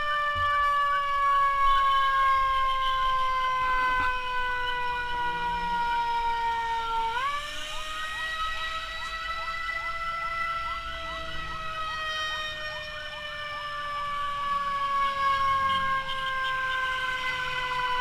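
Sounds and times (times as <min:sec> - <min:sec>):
ambulance siren: 0:00.0 - 0:18.0.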